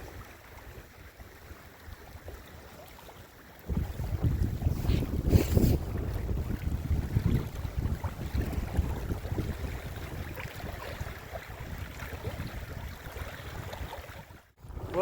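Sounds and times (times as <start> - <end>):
water lapping faintly: 0.0 - 15.0
wind buffeting microphone: 3.6 - 15.0.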